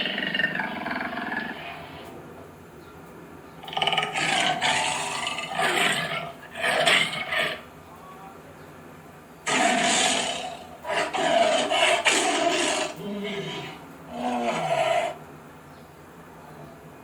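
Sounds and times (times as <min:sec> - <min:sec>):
big cat roaring and growling: 0:00.0 - 0:02.2, 0:03.6 - 0:07.7, 0:09.5 - 0:15.2.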